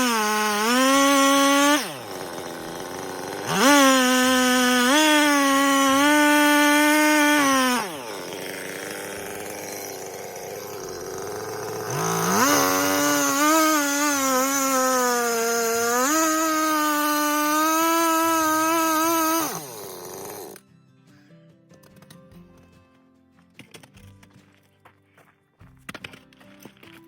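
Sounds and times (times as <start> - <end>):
power saw motor whining: 0.0 - 20.6.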